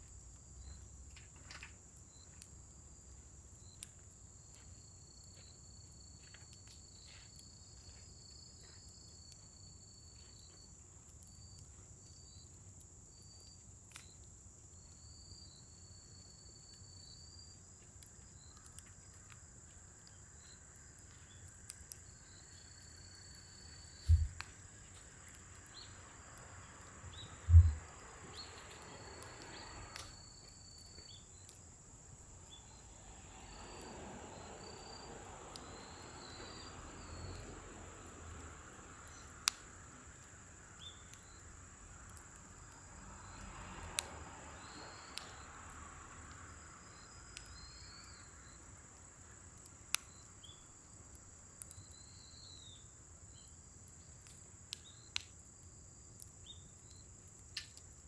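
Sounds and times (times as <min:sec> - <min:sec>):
fire crackling and popping: 0:00.0 - 0:58.0
insects trilling: 0:00.0 - 0:58.0
rushing of flame: 0:21.9 - 0:37.4
loud low thump: 0:27.5 - 0:27.8.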